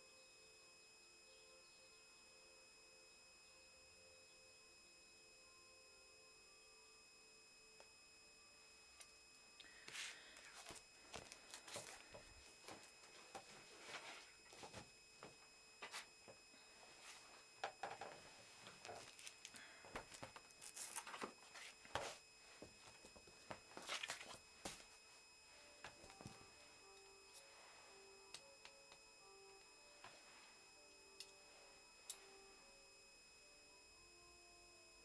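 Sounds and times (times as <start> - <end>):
scratching and rustling of paper: 9.9 - 14.9, 16.9 - 25.0.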